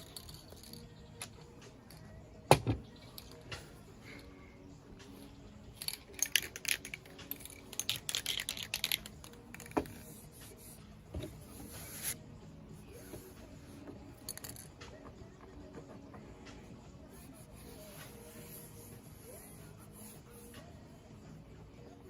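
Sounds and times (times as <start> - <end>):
small objects clicking and rustling: 5.8 - 10.0.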